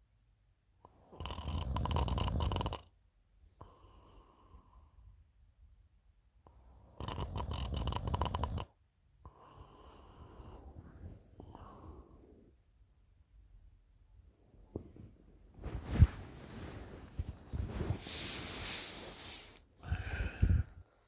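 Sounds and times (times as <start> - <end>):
quiet airy breath: 3.4 - 5.4, 9.2 - 12.8, 14.4 - 21.0
person snoring: 17.9 - 20.8.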